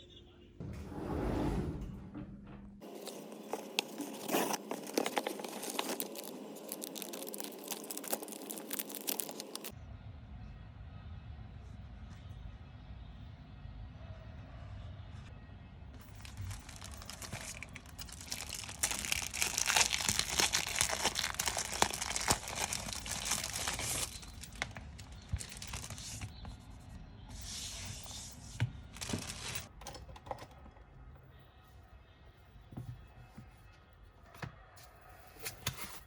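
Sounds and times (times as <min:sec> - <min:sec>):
packaging crinkling and tearing: 0:02.8 - 0:09.7, 0:16.0 - 0:26.5, 0:28.9 - 0:29.7.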